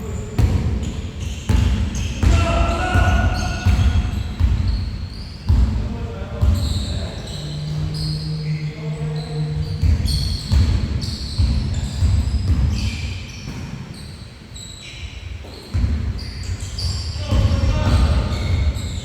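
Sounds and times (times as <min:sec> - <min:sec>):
shoe squeaks: 0:00.0 - 0:19.0
basketball bouncing: 0:00.4 - 0:06.9, 0:09.8 - 0:13.8, 0:15.7 - 0:19.0.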